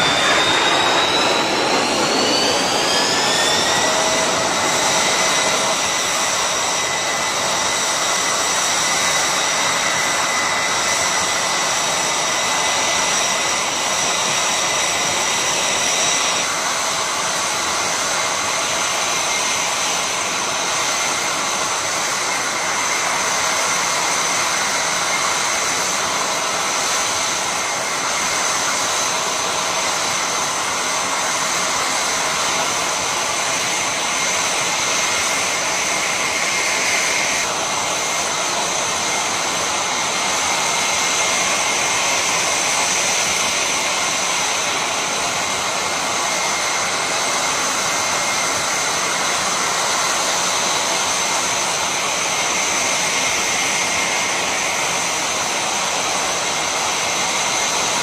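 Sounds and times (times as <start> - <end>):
air raid siren: 0.0 - 6.4
rushing noise: 0.0 - 7.6.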